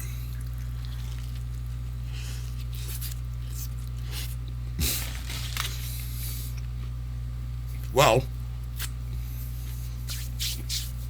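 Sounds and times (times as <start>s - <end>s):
chewing crispy sandwich: 0.0s - 7.0s.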